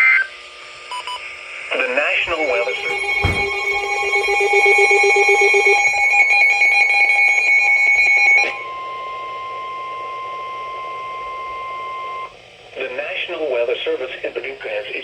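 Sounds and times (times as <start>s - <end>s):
steady weather radio alarm tone: 0.9s - 12.3s
layered alarm with pulsing beep: 2.2s - 12.3s.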